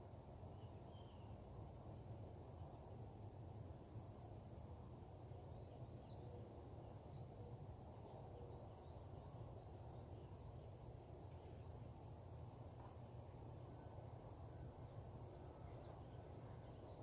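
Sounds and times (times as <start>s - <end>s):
faint bird chirps: 0.5s - 1.5s, 13.7s - 17.0s.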